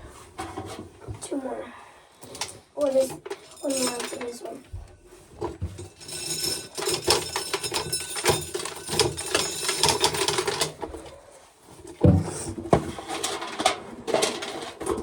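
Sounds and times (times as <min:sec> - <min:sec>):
corn sheller clattering: 0:02.8 - 0:04.7, 0:05.4 - 0:11.1, 0:12.0 - 0:15.0.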